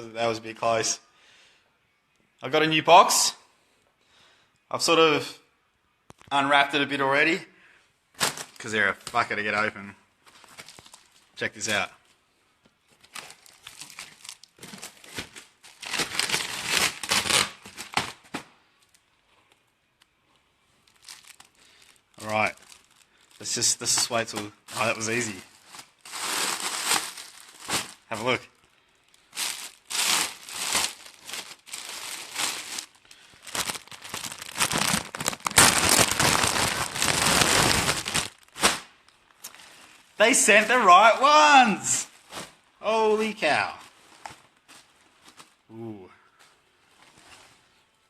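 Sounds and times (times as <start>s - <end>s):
packaging tearing and crinkling: 13.0s - 18.4s, 20.9s - 28.1s, 29.3s - 39.6s.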